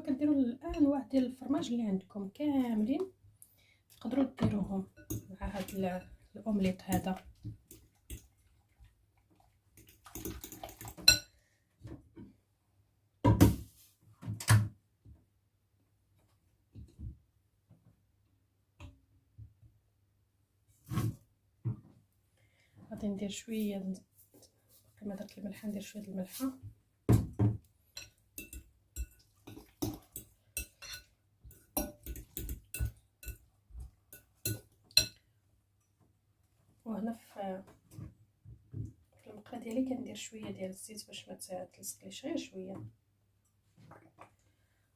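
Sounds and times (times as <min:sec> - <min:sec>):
bowls and utensils clattering: 0:04.9 - 0:08.5, 0:09.8 - 0:11.4, 0:27.9 - 0:35.2.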